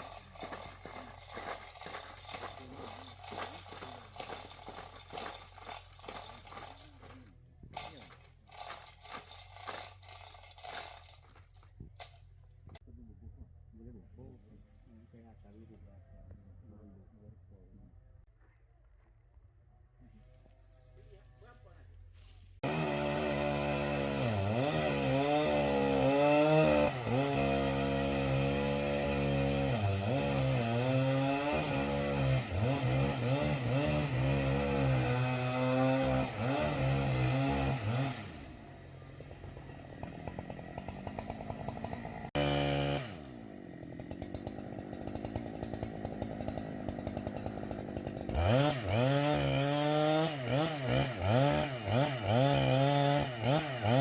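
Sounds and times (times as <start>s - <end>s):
chainsaw cutting at high revs: 0.0s - 11.4s, 22.6s - 54.0s.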